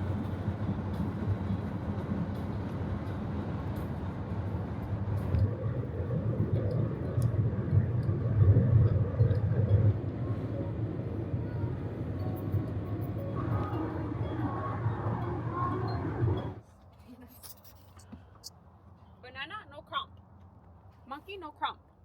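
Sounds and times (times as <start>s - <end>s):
road rumble inside moving van: 0.0s - 22.0s.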